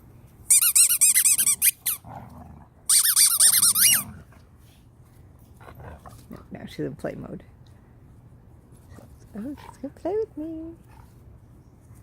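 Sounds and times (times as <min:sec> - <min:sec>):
squeaky dog toy squeaking: 0:00.5 - 0:02.0, 0:02.9 - 0:04.0.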